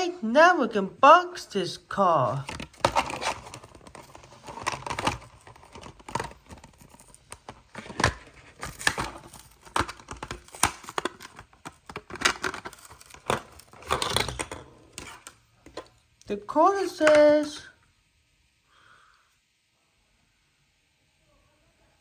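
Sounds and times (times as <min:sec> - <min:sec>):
tearing cardboard and plastic packaging: 0:02.3 - 0:15.4.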